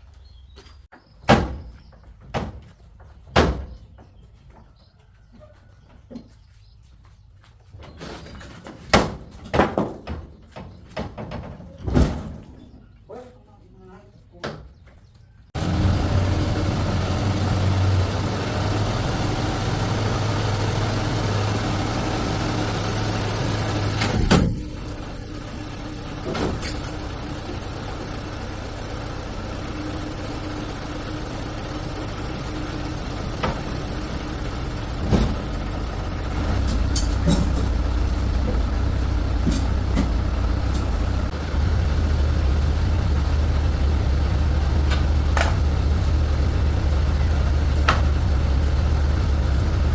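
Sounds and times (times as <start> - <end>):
heavy vehicle engine idling: 15.6 - 22.8, 27.4 - 49.9
sharp clicks and knocks: 36.4 - 49.9.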